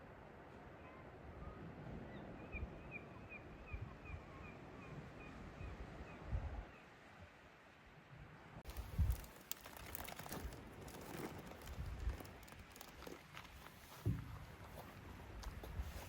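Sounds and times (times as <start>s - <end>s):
low rumble of wind: 0.0s - 16.0s.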